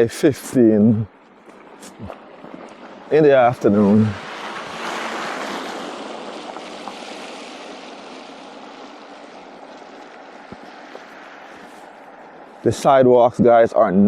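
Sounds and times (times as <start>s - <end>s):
vehicle tyre hiss on wet road: 3.7s - 12.7s.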